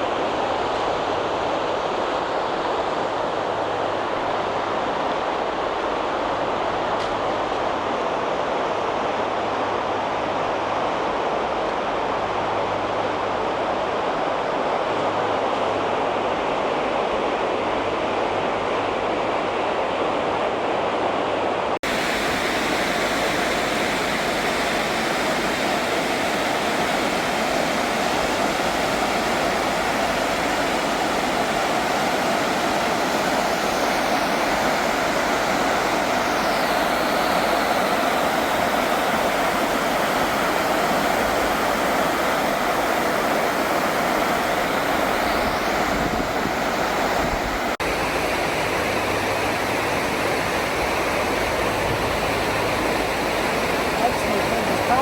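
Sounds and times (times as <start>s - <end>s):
stream water rushing: 21.8s - 55.0s.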